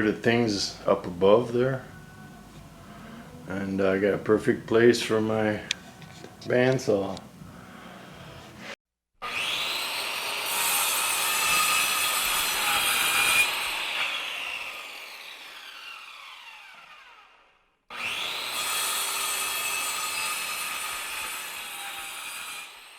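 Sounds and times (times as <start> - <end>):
electric bandsaw cutting wood: 7.8 - 22.9.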